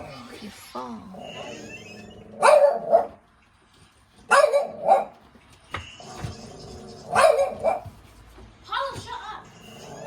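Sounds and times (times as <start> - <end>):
dog barking: 2.4 - 3.2, 4.3 - 5.2, 7.1 - 8.0.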